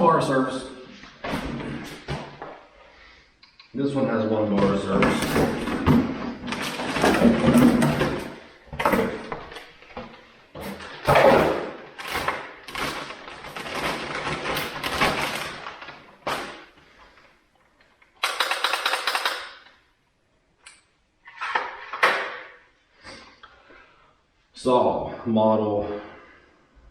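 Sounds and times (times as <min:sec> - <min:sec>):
tools clattering: 0:04.6 - 0:15.5, 0:18.2 - 0:19.8
packaging rustling: 0:05.0 - 0:17.2.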